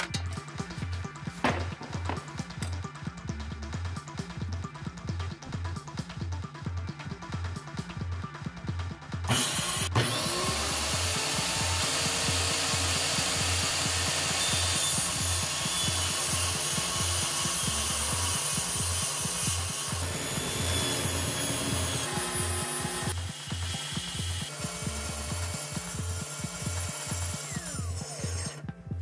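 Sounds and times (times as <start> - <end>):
background music with a beat: 0.0 - 29.0
power tool cutting wood: 9.3 - 28.7.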